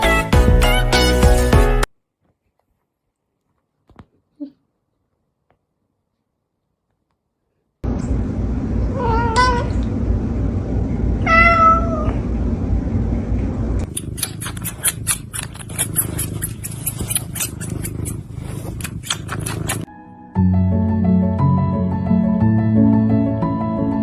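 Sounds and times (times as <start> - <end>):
cat meowing: 11.2 - 12.2
steady low rumble: 11.9 - 19.9.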